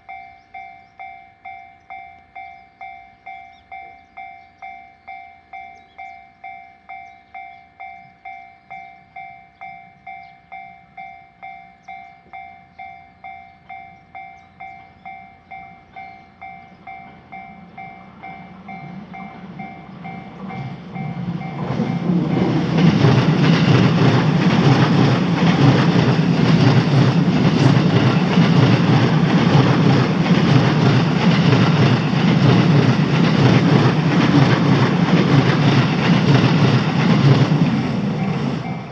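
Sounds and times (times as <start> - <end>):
electronic crossing bell ringing: 0.0 - 25.2
train wheels clattering on rails: 11.8 - 38.9.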